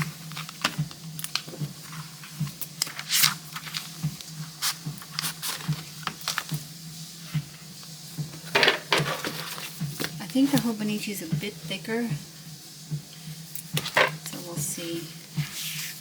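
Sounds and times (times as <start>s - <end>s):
paper and leather rustling: 0.0s - 6.6s, 8.7s - 10.8s.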